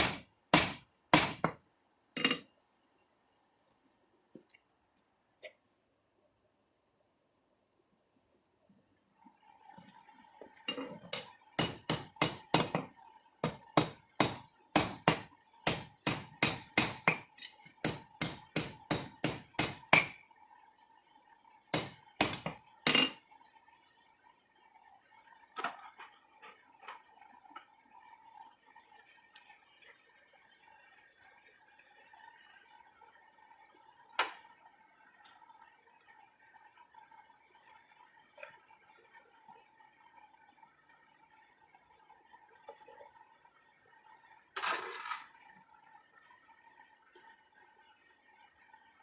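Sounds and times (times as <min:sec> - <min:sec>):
hammer striking hot steel on anvil: 0:00.0 - 0:01.6, 0:11.1 - 0:20.2, 0:21.8 - 0:23.2
faint steady hum: 0:00.0 - 0:49.0.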